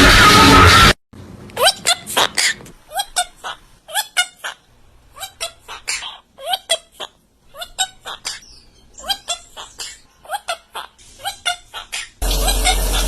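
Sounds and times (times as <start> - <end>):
pet bird chirping: 5.2 - 12.2.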